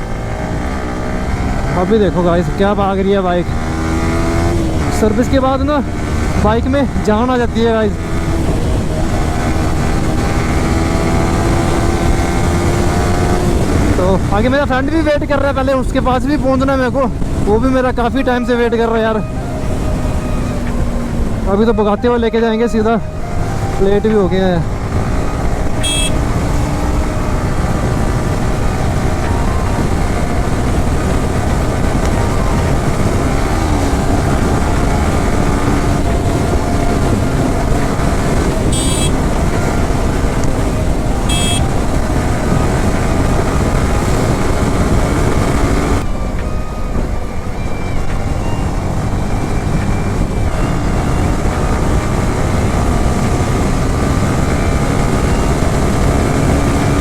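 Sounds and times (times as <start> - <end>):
wind rush on microphone: 0.0 - 57.0
motorcycle engine running: 22.8 - 46.4.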